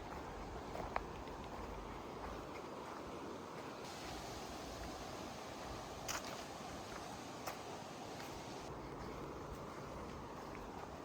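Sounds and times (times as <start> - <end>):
wind hiss: 1.5 - 8.8.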